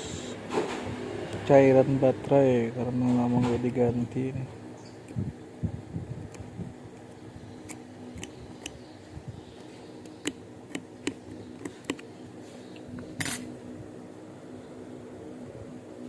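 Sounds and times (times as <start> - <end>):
metal tool scrape: 13.2 - 13.5.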